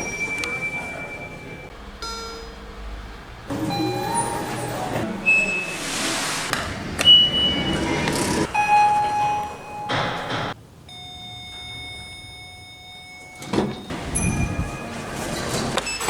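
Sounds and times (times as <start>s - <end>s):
elevator chime: 0.0s - 16.0s
lift doors sliding: 3.2s - 16.0s.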